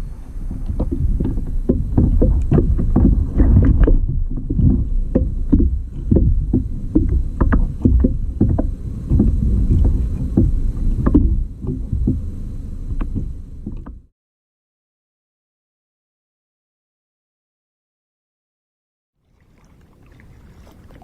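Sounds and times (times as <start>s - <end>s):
knocks and splashes at hull: 0.0s - 14.1s, 19.3s - 21.0s
water sloshing against kayak: 0.0s - 14.1s, 19.2s - 21.0s.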